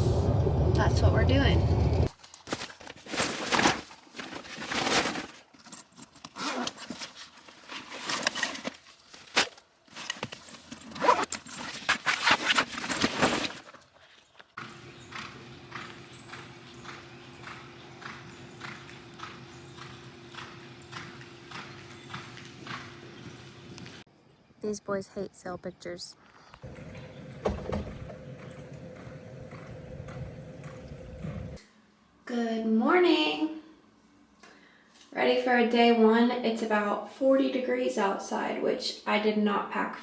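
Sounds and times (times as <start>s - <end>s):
steady hum: 0.0s - 2.1s
horse hooves clopping on hard ground: 14.3s - 24.0s, 26.6s - 31.6s.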